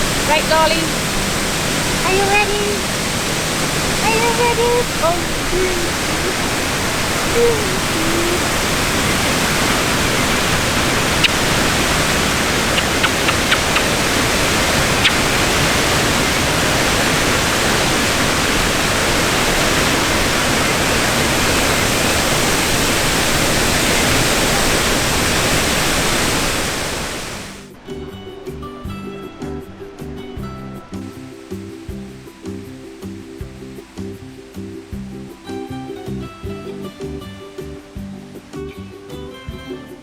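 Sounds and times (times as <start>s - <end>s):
fountain water splashing: 0.0s - 27.8s, 31.1s - 38.7s
faint short clicks: 12.6s - 14.0s.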